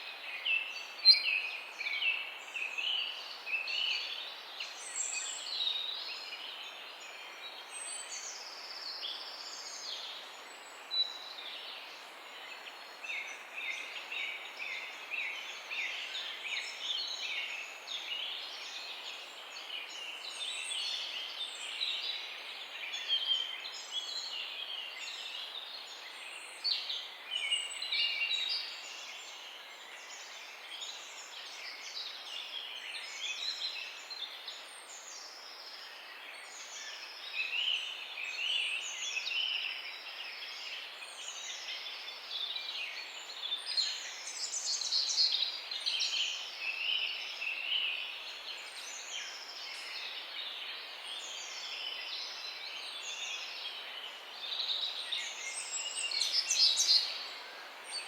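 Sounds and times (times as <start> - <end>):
steady outdoor hiss: 0.0 - 58.0
small birds chirping: 30.0 - 58.0.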